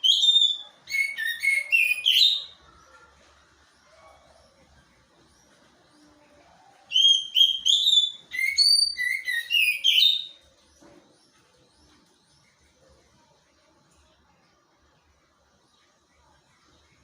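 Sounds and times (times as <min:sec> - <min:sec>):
songbird whistling: 0:00.0 - 0:02.6, 0:06.9 - 0:10.4.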